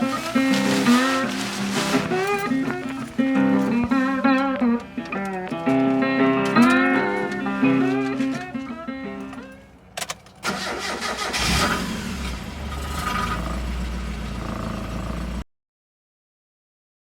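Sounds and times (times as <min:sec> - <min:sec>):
car engine cranking and idling: 0:09.2 - 0:15.4.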